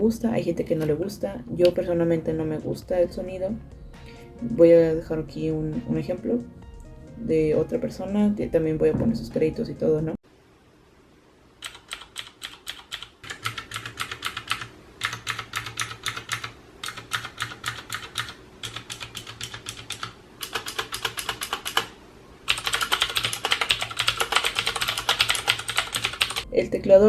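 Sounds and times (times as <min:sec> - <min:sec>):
clicky mechanical keyboard typing: 0:11.6 - 0:21.9, 0:22.5 - 0:26.4.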